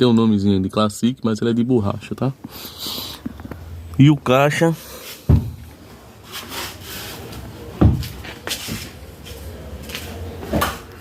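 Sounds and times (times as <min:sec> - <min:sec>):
dull thumps: 0:05.3 - 0:05.8, 0:07.8 - 0:08.2
rubbing and scraping: 0:06.2 - 0:10.0.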